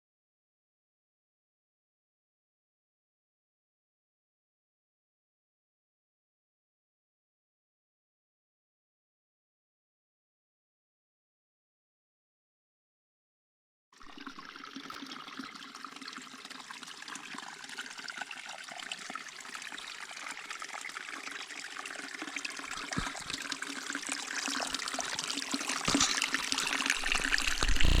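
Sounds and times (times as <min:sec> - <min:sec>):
running water: 0:14.0 - 0:28.0.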